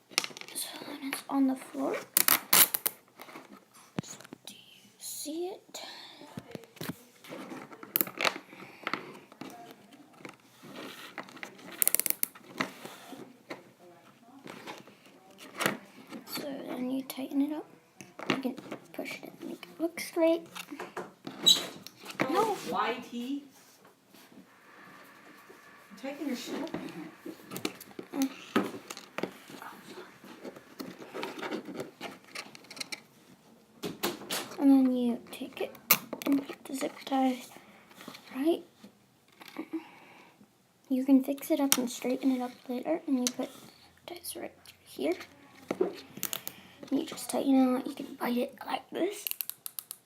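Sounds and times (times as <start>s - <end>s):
plastic zip tie handling: 2.1s - 3.0s, 10.2s - 12.6s, 46.2s - 46.6s, 49.2s - 50.0s
hands rubbing and rustling: 21.7s - 33.5s.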